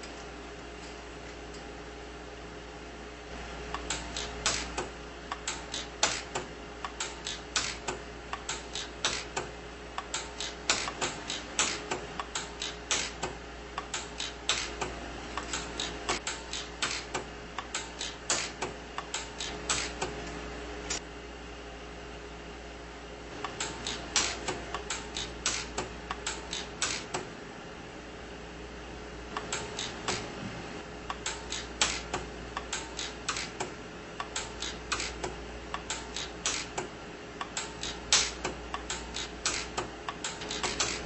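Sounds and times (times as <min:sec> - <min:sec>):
steady low hum: 0:00.0 - 0:41.0
welder pulses snapping: 0:03.8 - 0:20.1, 0:23.4 - 0:27.2, 0:31.1 - 0:41.0.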